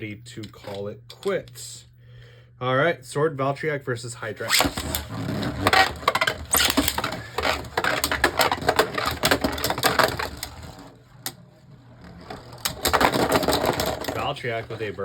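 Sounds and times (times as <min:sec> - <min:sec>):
spinning tops clashing: 0:04.5 - 0:10.5.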